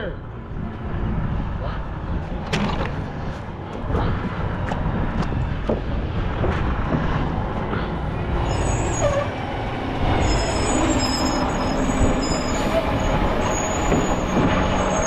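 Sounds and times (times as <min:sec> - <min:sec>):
truck diesel engine rumble: 0:00.0 - 0:15.0
brake squeal: 0:08.2 - 0:15.0.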